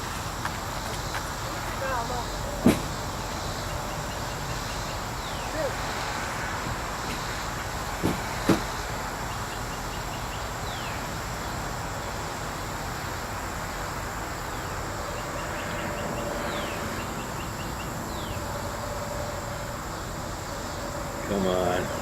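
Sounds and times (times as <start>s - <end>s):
bird singing: 0.0s - 5.9s, 9.2s - 12.2s, 14.4s - 22.0s
high insect drone: 0.0s - 22.0s.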